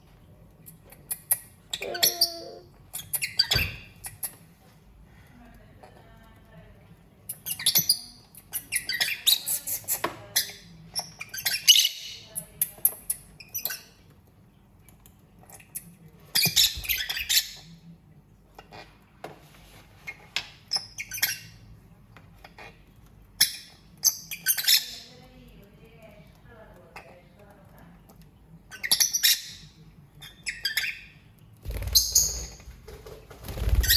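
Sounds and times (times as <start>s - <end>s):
lovebirds chirping and squawking: 0.6s - 4.5s, 7.3s - 14.1s, 15.4s - 17.8s, 20.0s - 21.8s, 22.4s - 25.2s, 28.6s - 33.9s.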